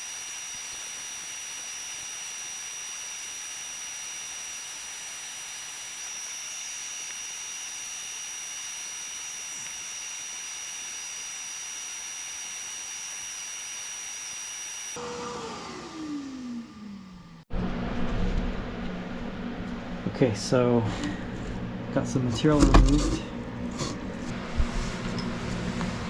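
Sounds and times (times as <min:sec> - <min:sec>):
cutoff wheel grinder whining: 0:00.0 - 0:17.4
grinder wheel spinning down: 0:00.0 - 0:17.4.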